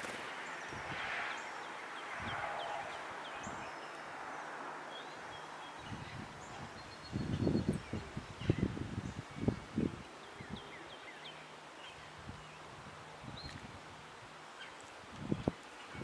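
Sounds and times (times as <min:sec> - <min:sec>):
steady outdoor hiss: 0:00.0 - 0:02.2, 0:03.0 - 0:16.0
small songbirds chirping: 0:03.2 - 0:13.6.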